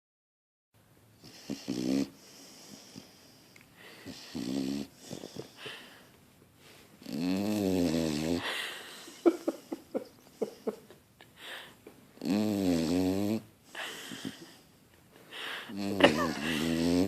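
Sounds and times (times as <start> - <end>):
dog snoring: 1.2 - 3.4, 4.0 - 5.6, 7.0 - 8.5, 12.2 - 13.5, 15.7 - 17.0
dog breathing quietly: 1.2 - 7.0.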